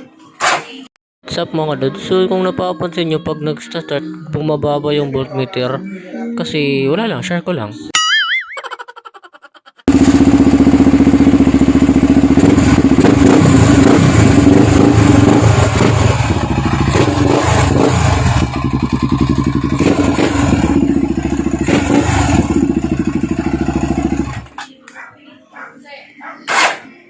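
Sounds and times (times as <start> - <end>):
motorcycle engine running: 9.9 - 24.6.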